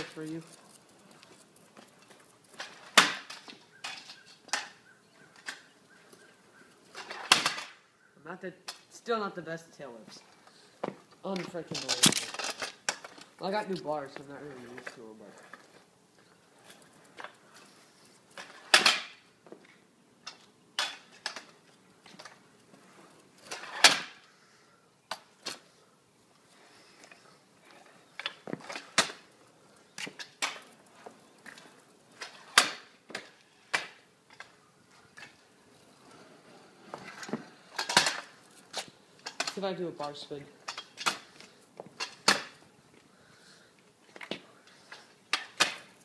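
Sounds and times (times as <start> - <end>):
scooter deck and wheel impacts: 1.8 - 5.7, 6.9 - 7.8, 18.4 - 22.4, 23.4 - 24.2, 28.1 - 29.3, 30.0 - 35.4, 36.8 - 39.6, 40.6 - 42.6, 44.1 - 46.0
scooter rattles and clicks: 27.7 - 42.6.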